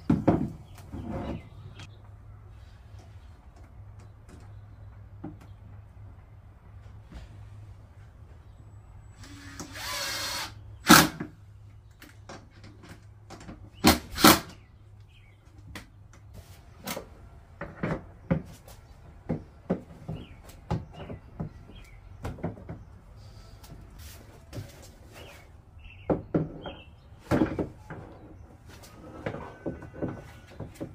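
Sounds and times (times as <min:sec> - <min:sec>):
power drill whirring: 0:09.2 - 0:11.2.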